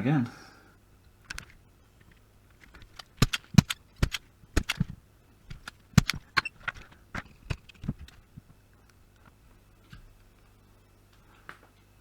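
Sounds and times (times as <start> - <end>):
hand tools clicking on circuit board: 1.2 - 8.2.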